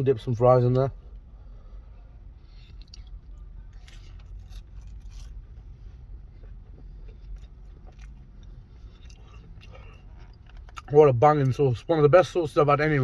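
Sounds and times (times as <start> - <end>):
person chewing fries: 2.4 - 10.9.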